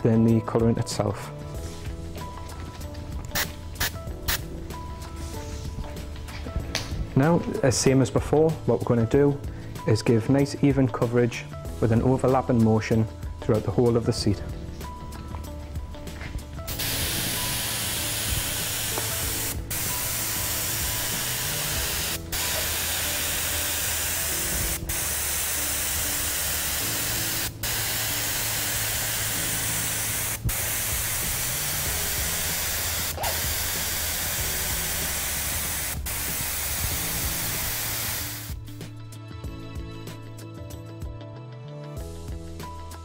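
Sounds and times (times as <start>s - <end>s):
spray gun hissing: 16.7s - 38.6s.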